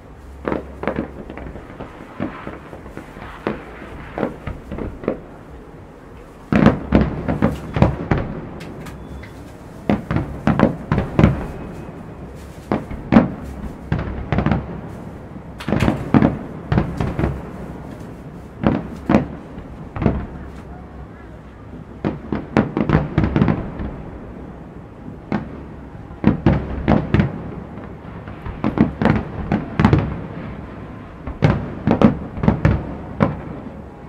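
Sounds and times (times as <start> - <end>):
fireworks shells bursting: 0.0 - 20.7.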